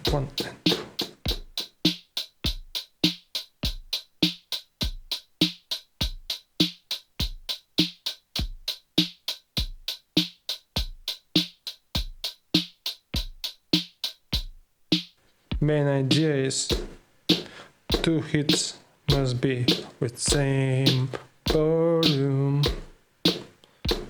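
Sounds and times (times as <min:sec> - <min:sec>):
drum machine kick and snare: 0:00.0 - 0:24.0.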